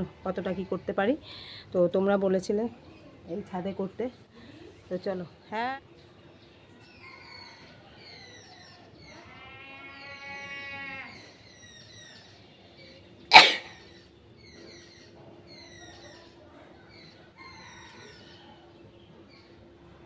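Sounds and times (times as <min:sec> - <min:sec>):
small birds chirping: 0:00.0 - 0:20.0
nose blowing: 0:13.3 - 0:13.7.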